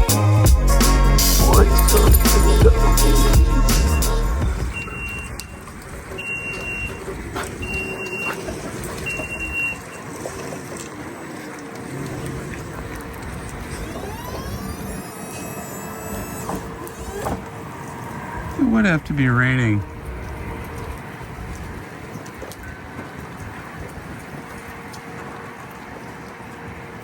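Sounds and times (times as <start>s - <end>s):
motor whine: 0.0s - 19.2s
engine running: 0.0s - 22.1s
truck warning beeper: 1.3s - 8.4s, 9.0s - 10.0s.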